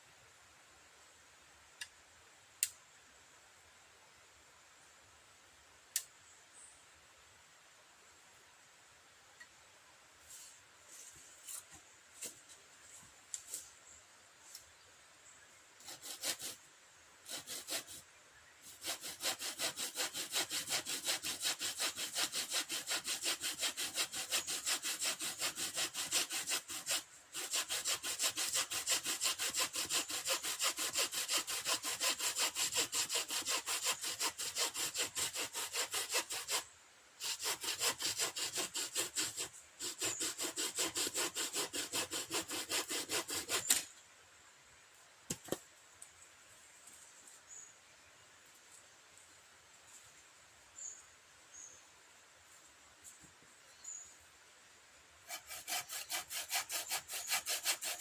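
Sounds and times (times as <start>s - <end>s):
hand saw cutting wood: 15.8s - 16.6s, 17.2s - 18.0s, 18.6s - 43.9s, 55.2s - 58.0s.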